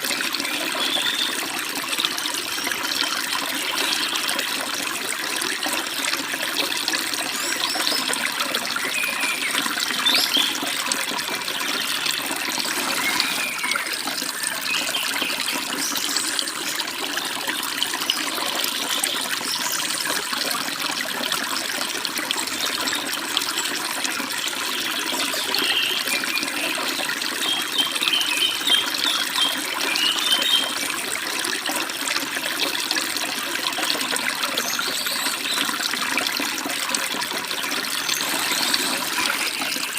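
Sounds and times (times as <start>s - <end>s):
stream babbling and splashing: 0.0s - 39.9s
small birds chirping: 25.0s - 30.9s, 38.0s - 39.9s.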